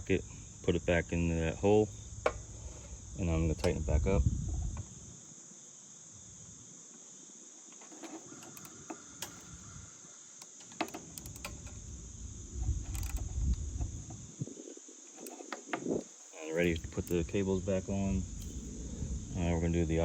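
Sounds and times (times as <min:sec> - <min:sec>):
crickets chirring: 0:00.0 - 0:20.0
socket wrench clicking: 0:08.3 - 0:09.6, 0:10.4 - 0:11.8, 0:12.7 - 0:13.5.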